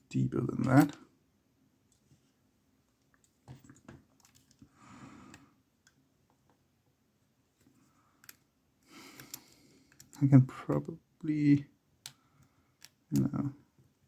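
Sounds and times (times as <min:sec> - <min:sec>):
soft rustle: 0:01.9 - 0:04.7.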